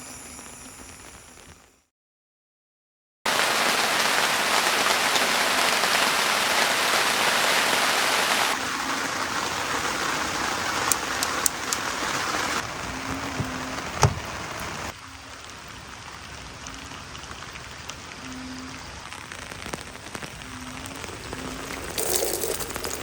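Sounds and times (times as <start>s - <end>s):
heavy rain falling: 3.3s - 23.0s
sharp drip ticks: 10.9s - 11.9s.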